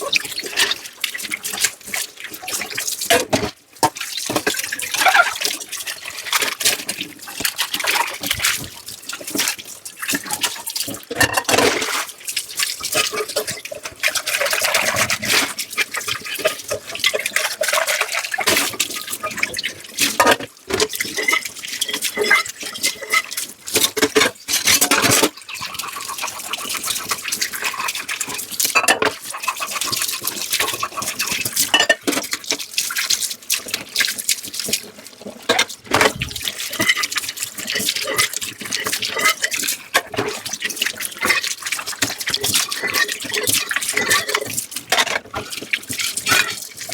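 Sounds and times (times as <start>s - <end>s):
tap water running and splashing: 0.0s - 46.9s
scrubbing dishes: 2.5s - 5.6s, 20.0s - 32.7s, 35.5s - 41.4s.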